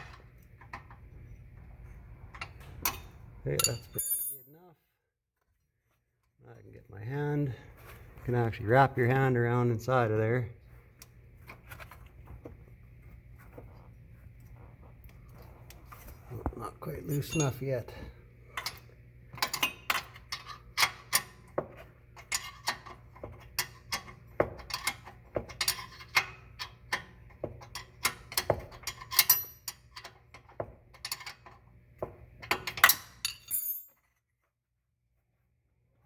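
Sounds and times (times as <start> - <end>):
wrench clinking against metal: 2.9 - 4.6, 17.0 - 17.9, 32.8 - 34.0.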